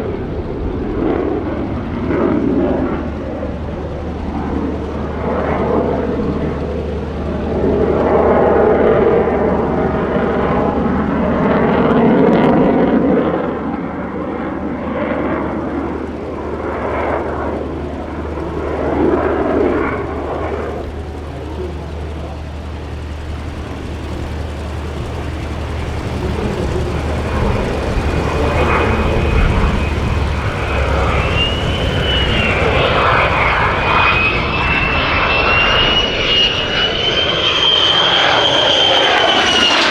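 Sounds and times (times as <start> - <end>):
jet engine roaring: 0.0 - 39.9
high wavering whine: 20.6 - 39.9.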